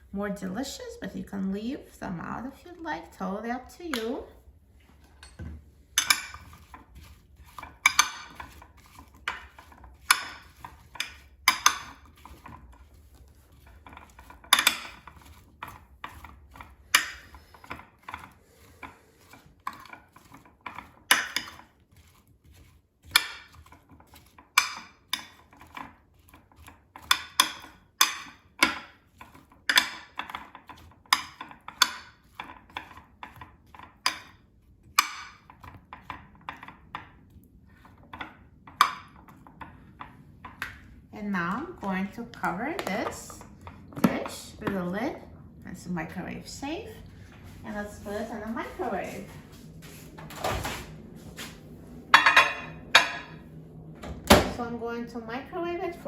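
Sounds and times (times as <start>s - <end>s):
utensils and dish clinking: 52.2s - 53.4s.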